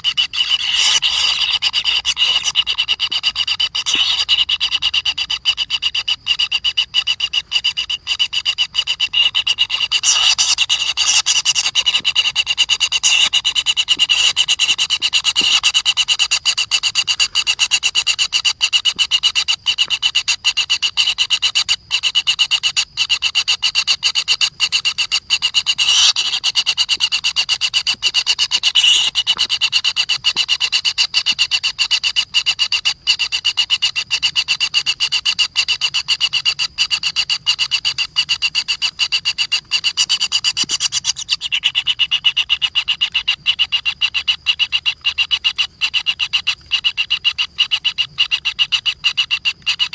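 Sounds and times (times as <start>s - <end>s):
pulsed rasping animal call: 0.0s - 2.9s, 8.5s - 15.9s, 25.6s - 26.4s, 28.6s - 29.2s.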